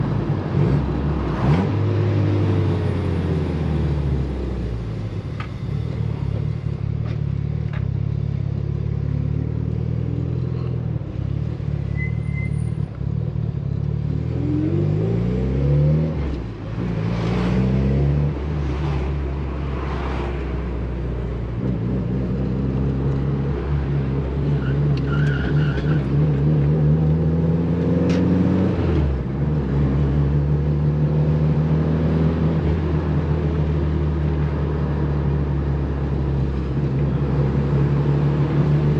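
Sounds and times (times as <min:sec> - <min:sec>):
car engine revving through gears: 0:14.0 - 0:20.2, 0:21.6 - 0:33.6.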